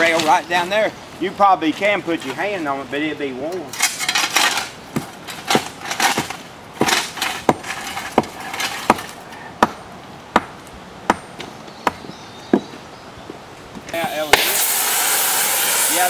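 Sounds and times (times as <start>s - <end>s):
rough scraping: 3.6s - 9.4s.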